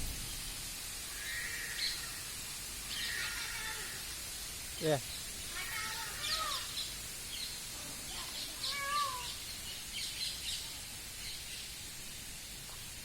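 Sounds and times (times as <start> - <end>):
long bending bird calls: 0.0 - 13.0
steady hiss: 0.0 - 13.0
birds chirping: 4.7 - 12.2.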